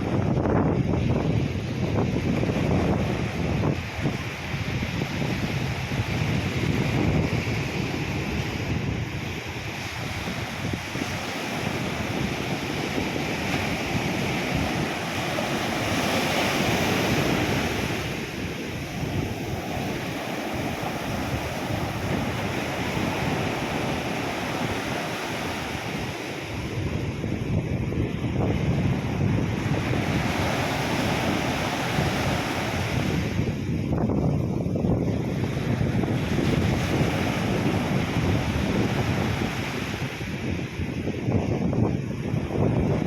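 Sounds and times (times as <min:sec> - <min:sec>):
waves breaking on beach: 0:00.0 - 0:43.0
wind buffeting microphone: 0:00.0 - 0:43.0.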